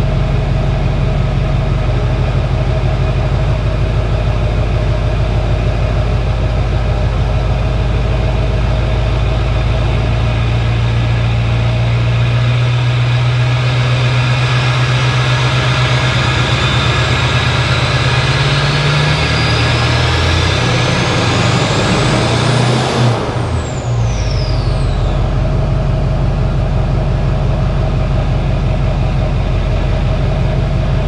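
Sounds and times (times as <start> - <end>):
diesel engine low drone: 0.0 - 31.0
turbo whistle: 15.6 - 22.2, 23.7 - 25.6.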